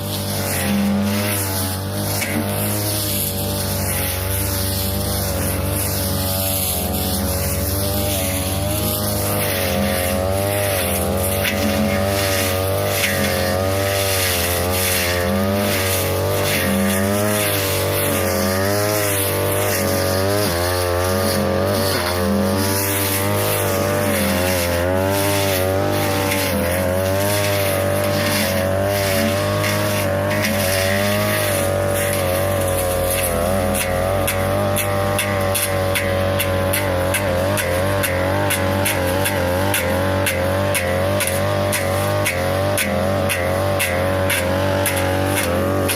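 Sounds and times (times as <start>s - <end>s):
blade ticking on stems: 0.0s - 45.9s
brush cutter engine running: 0.0s - 45.9s.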